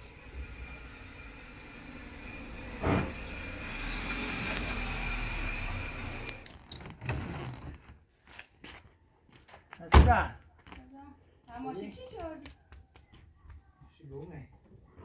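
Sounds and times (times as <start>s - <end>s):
car engine running: 0.0s - 6.4s
steady high whine: 0.0s - 6.4s.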